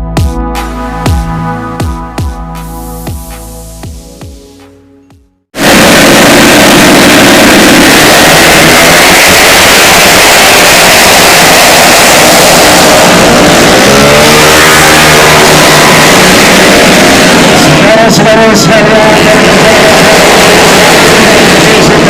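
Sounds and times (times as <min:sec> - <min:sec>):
scooter engine revving: 0:05.6 - 0:22.0.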